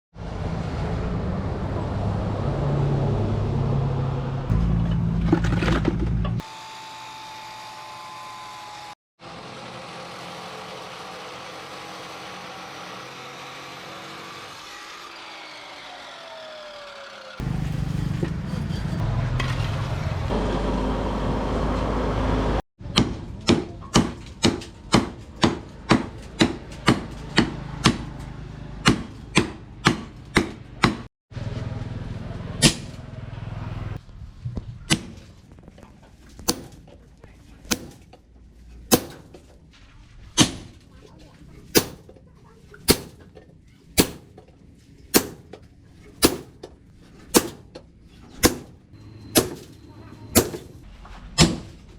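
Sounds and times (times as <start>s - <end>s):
hammer blows on steel: 38.9s - 39.4s, 41.8s - 42.1s, 42.9s - 43.3s, 44.0s - 44.3s, 45.2s - 45.6s, 46.2s - 46.7s, 47.3s - 47.8s, 48.4s - 50.8s.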